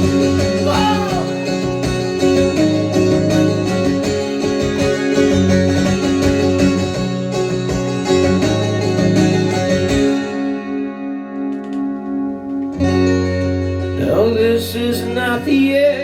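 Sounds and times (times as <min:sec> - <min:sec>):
guitar chord with pulsing wobble: 0:00.0 - 0:16.0
guitar strummed and picked: 0:00.0 - 0:16.0.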